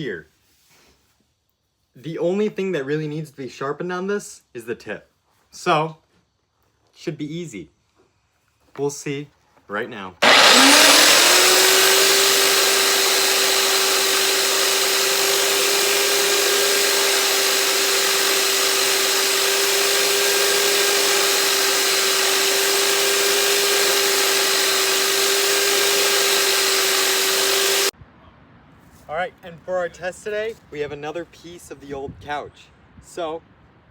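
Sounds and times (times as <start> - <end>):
electric grinder whining: 10.2 - 27.9
grinding hiss: 10.2 - 27.9.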